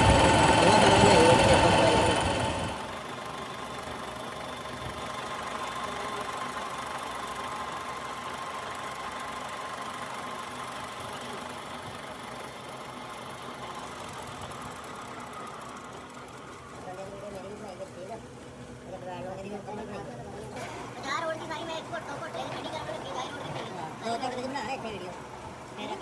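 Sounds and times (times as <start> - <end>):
milling machine humming: 0.0 - 3.1
faint steady whine: 0.0 - 3.5.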